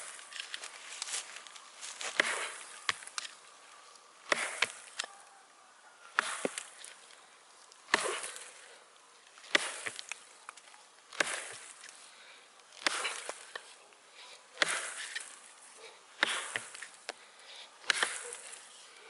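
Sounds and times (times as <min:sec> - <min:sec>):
hatchet chopping log: 0:02.1 - 0:03.3, 0:04.2 - 0:05.1, 0:06.1 - 0:07.0, 0:07.9 - 0:08.6, 0:09.4 - 0:11.9, 0:12.8 - 0:13.7, 0:14.6 - 0:15.4, 0:16.2 - 0:17.2, 0:17.8 - 0:18.6.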